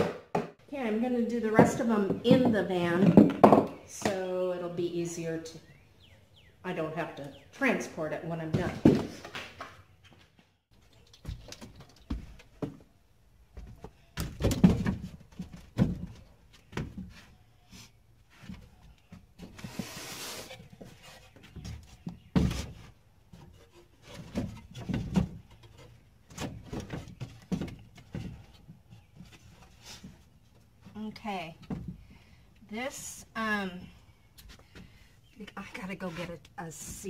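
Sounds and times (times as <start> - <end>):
knocks and handling noises: 1.5 - 4.3, 8.4 - 32.2.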